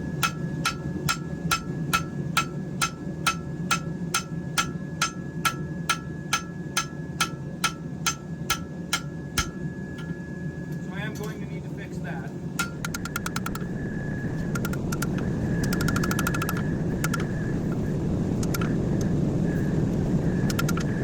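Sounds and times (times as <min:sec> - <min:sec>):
steady low hum: 0:00.0 - 0:21.0
hammer striking steel: 0:00.1 - 0:10.2, 0:12.6 - 0:13.6.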